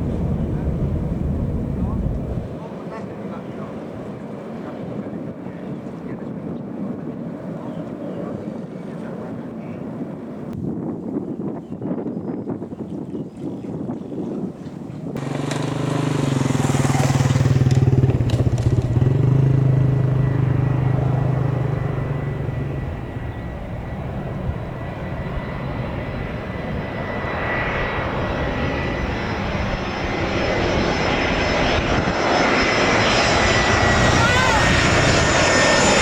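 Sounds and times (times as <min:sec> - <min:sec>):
jet engines roaring: 0:00.0 - 0:10.6, 0:15.2 - 0:36.0
high engine whine: 0:15.2 - 0:36.0.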